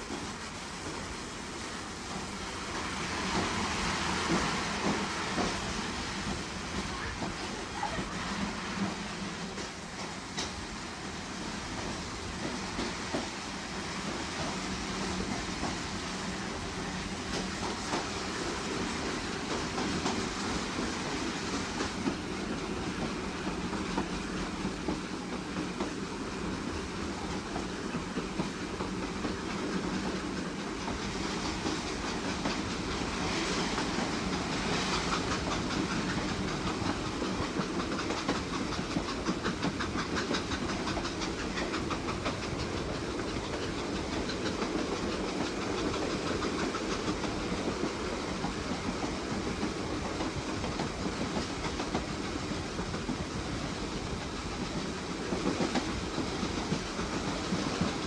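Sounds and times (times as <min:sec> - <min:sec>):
train rumbling on rails: 0:00.0 - 0:58.0
wheels clicking over track: 0:26.9 - 0:58.0.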